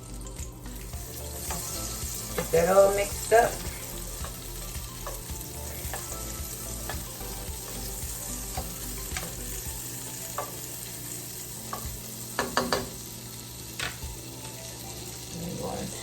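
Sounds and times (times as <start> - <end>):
butter sizzling in a pan: 0.0 - 16.0
utensil tapping a pan: 1.4 - 10.7, 11.7 - 13.0.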